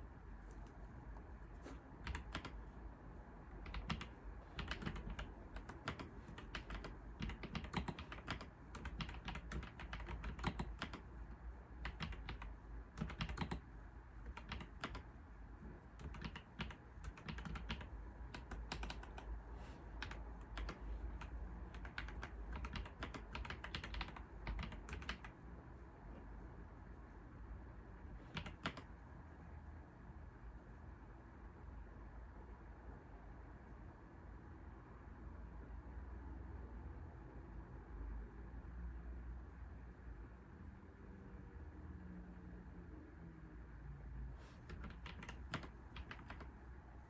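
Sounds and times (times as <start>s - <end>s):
keyboard typing: 0.4s - 2.8s, 3.6s - 15.1s, 15.9s - 25.4s, 28.2s - 29.0s, 44.6s - 46.6s.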